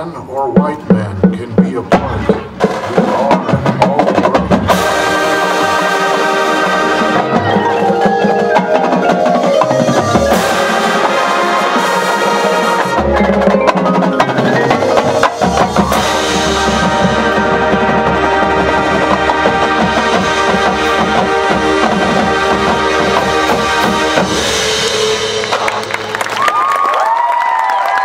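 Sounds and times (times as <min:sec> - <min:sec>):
marching band playing chords: 0:00.0 - 0:26.5
mallet instruments: 0:06.0 - 0:26.3.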